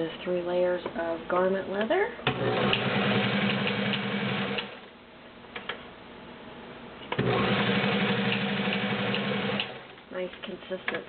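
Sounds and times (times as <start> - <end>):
sewing machine stitching: 2.3 - 4.8, 7.2 - 9.9.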